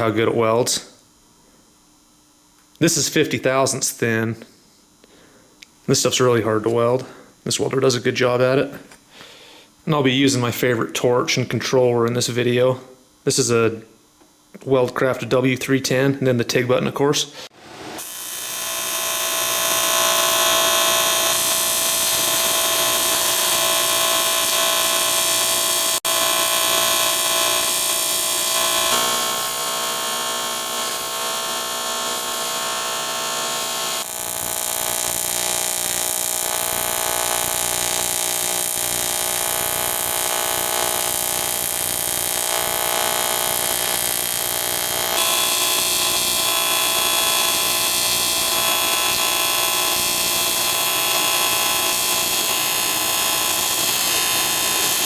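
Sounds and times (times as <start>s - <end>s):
welding arc buzzing: 17.5s - 55.0s.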